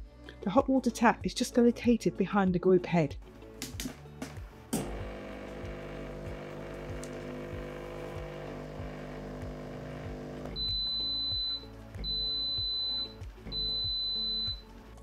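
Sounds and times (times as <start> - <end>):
espresso machine pump humming: 4.8 - 11.5
long high beeps: 10.5 - 14.6.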